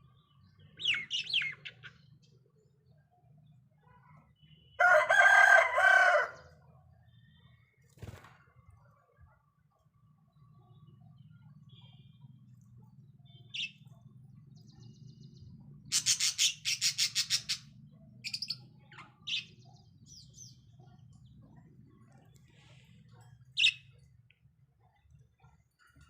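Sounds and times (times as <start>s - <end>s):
budgerigars chirping: 15.9s - 17.7s
faint low hum: 17.7s - 26.0s.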